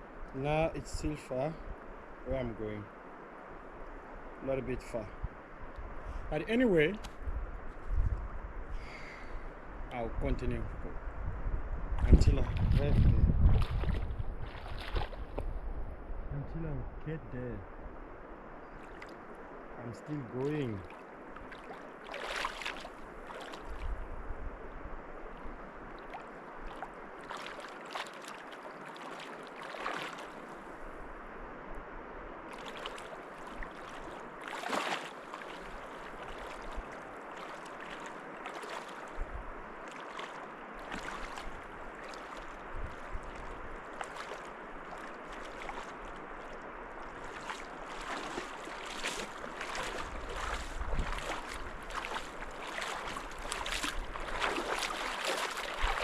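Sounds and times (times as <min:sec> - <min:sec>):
river rushing: 0:18.4 - 0:23.8, 0:25.2 - 0:31.3, 0:32.4 - 0:56.0.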